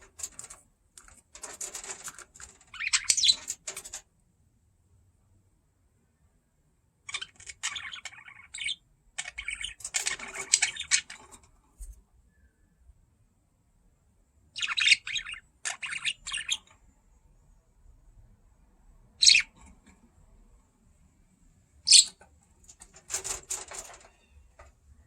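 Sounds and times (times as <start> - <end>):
budgerigar chirping: 2.8 - 3.5, 7.1 - 11.2, 14.6 - 16.7, 19.2 - 19.5, 21.9 - 22.2.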